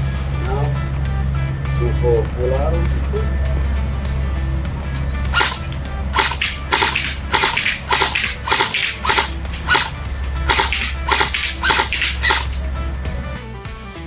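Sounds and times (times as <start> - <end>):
airsoft rifle firing bursts: 3.5 - 13.2.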